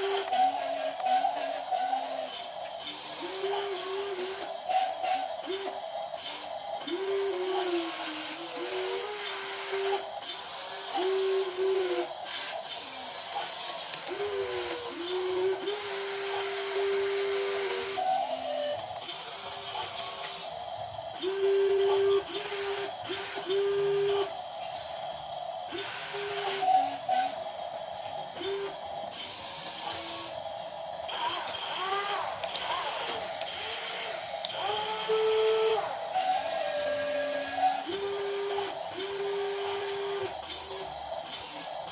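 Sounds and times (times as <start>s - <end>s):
small electric motors whining: 0.0s - 41.9s
hiss: 0.1s - 20.6s, 28.4s - 30.4s, 31.2s - 41.9s.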